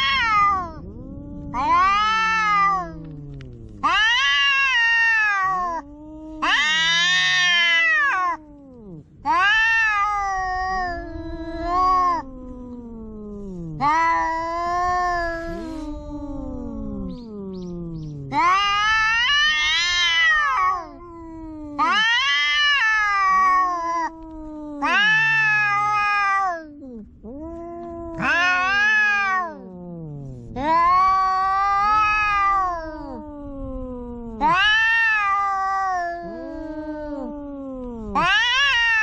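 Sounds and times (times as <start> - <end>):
cats yowling: 0.0 - 39.0
low moaning cat yowls: 0.0 - 39.0.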